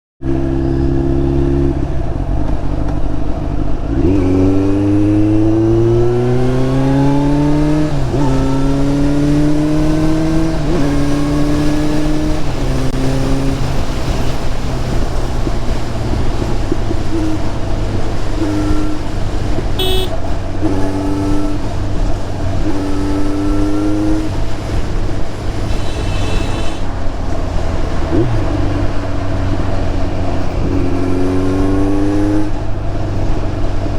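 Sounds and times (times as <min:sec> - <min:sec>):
motorcycle accelerating through gears: 0:00.2 - 0:26.1, 0:26.8 - 0:33.9
high beep: 0:19.8 - 0:20.2.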